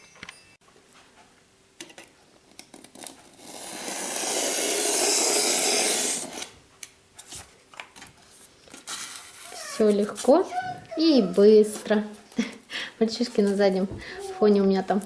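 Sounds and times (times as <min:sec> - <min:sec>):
foam tearing and scraping: 0:02.9 - 0:06.6, 0:08.7 - 0:10.4.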